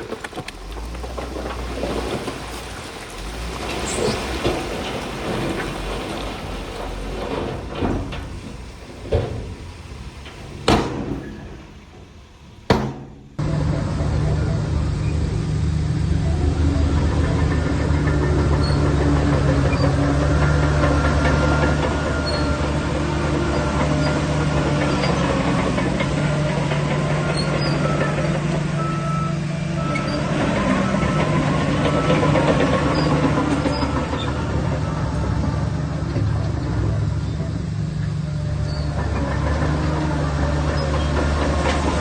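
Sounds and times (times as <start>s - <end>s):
heavy diesel engine droning: 0.0s - 42.0s
sharp knocks: 7.7s - 13.4s.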